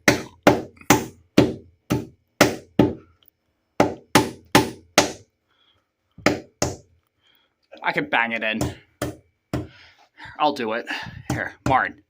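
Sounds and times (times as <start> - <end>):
hammer striking nail into wood: 0.0 - 3.0, 3.8 - 5.2, 6.2 - 6.9.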